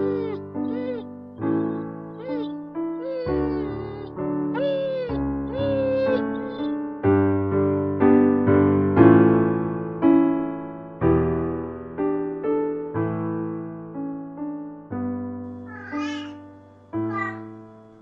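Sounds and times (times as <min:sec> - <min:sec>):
cat meowing: 0:00.0 - 0:06.7, 0:15.6 - 0:16.4, 0:17.1 - 0:17.5
gentle piano music: 0:00.0 - 0:18.0.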